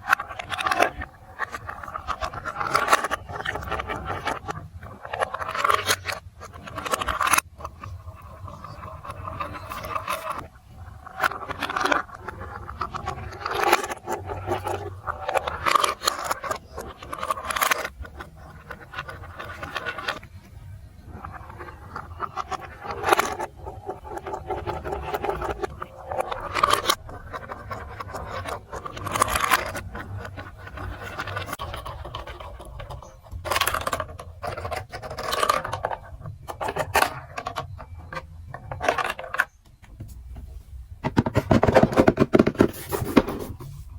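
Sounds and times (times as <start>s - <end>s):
plastic pieces scraping: 41.0s - 43.6s.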